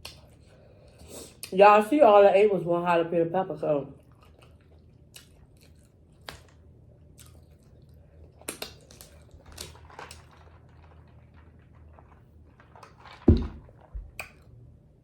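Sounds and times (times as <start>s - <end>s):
person chewing food: 4.0s - 14.5s.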